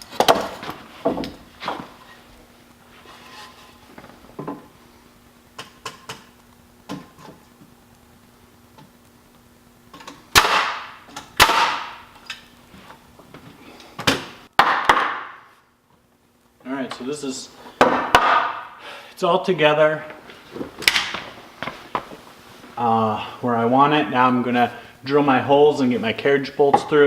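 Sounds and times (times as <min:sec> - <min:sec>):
faint steady hum: 0:00.0 - 0:27.0
boards knocking together: 0:00.1 - 0:01.9, 0:14.0 - 0:15.3, 0:17.8 - 0:18.6
loud sharp bangs on wood: 0:10.3 - 0:12.0, 0:14.1 - 0:15.5, 0:17.8 - 0:18.7.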